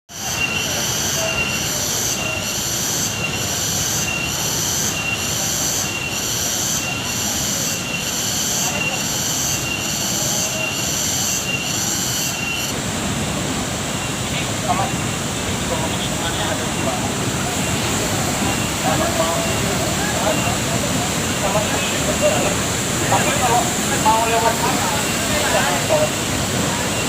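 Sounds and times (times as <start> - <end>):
pulsing high whine: 0.1 - 27.0
waterfall rushing: 0.2 - 27.0.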